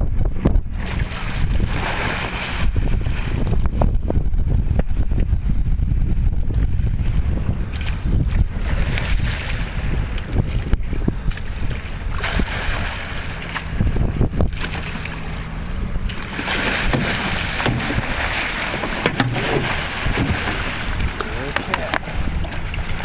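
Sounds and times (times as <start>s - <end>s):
boat rumbling and splashing: 0.0s - 23.0s
wind buffeting microphone: 0.0s - 23.0s
sharp knocks: 16.8s - 18.1s.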